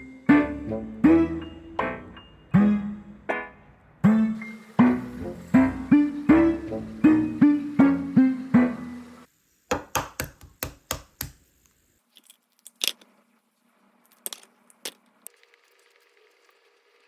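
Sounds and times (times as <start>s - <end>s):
guitar music: 0.0s - 9.2s.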